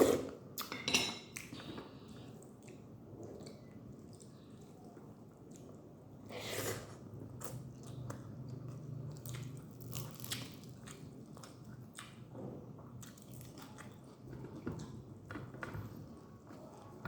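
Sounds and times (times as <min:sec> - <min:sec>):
chewing and mouth smacks: 0:02.4 - 0:05.9, 0:07.4 - 0:14.9.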